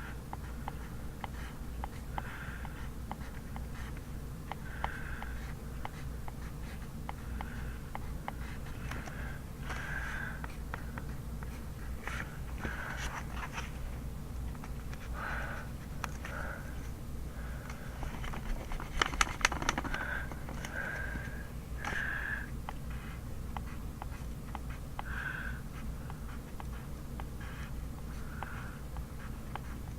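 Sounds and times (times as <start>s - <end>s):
pencil scratching on paper: 0.0s - 9.1s, 22.9s - 29.9s
steady low hum: 0.0s - 29.9s
pencil tapping down: 18.3s - 21.1s.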